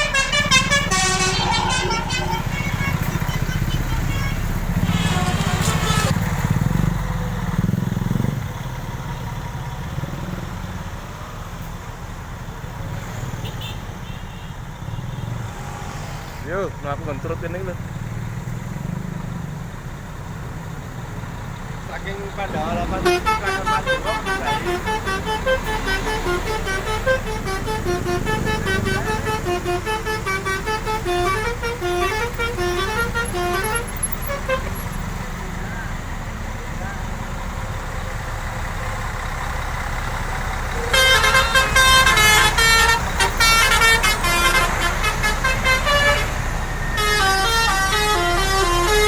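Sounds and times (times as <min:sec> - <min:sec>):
bus horn playing melody: 0:00.0 - 0:06.3, 0:22.6 - 0:36.0, 0:40.6 - 0:49.0
rumble of passing traffic: 0:00.0 - 0:49.0
vehicle engine running close: 0:00.0 - 0:49.0.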